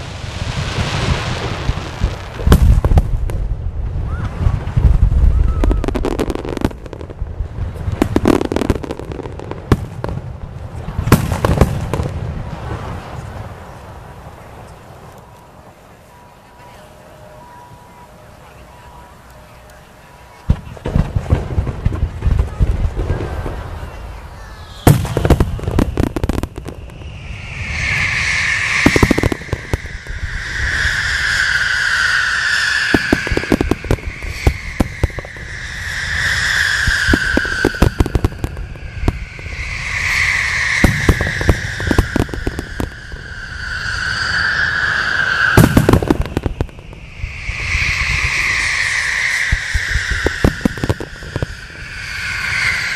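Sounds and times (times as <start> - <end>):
fireworks bursting with bangs: 0.0 - 14.0, 20.4 - 52.9
fireworks crackle: 0.0 - 15.9, 19.2 - 52.9
low rumble: 20.6 - 52.9
steady hiss: 23.5 - 52.9.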